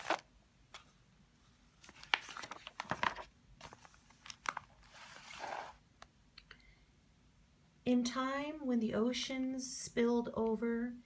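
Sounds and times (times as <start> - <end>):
book pages rustling: 0.0 - 5.8.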